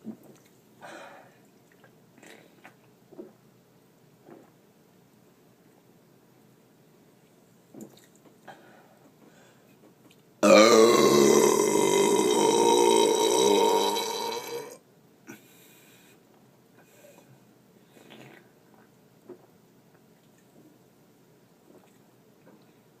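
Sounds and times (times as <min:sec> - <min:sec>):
person burping: 0:10.4 - 0:14.8.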